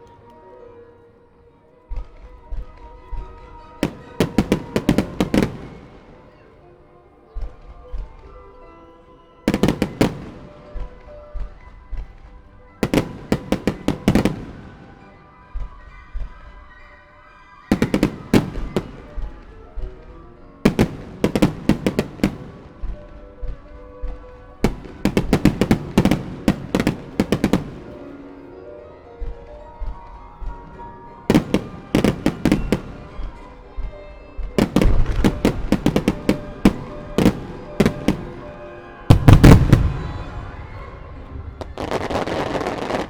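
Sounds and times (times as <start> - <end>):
music: 0.0 - 43.0
firework shells bursting: 3.3 - 6.4, 12.8 - 14.9, 17.7 - 23.3, 24.0 - 28.2, 30.1 - 43.0.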